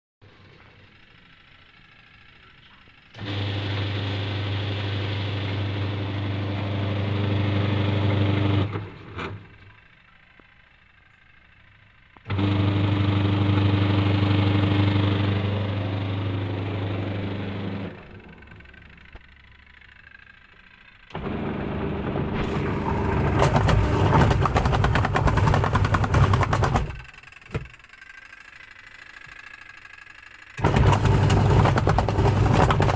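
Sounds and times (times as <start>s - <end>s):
spin-dryer motor humming: 11.6s - 32.9s.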